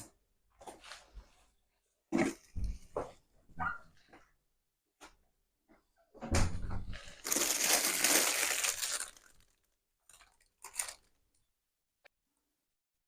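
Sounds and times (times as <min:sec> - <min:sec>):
packaging crinkling: 0:06.9 - 0:11.3.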